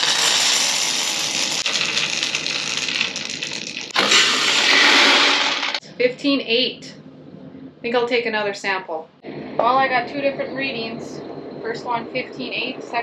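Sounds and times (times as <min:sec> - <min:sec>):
grain rattling through a tester: 0:00.0 - 0:05.8.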